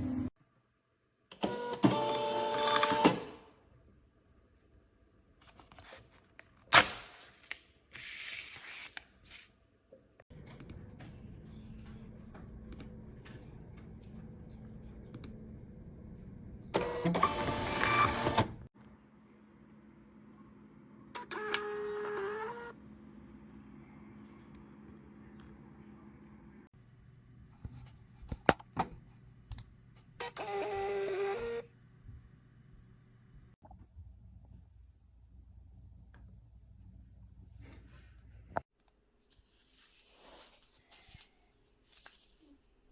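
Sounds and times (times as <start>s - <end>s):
label printer feed motor whirring: 16.8s - 18.6s.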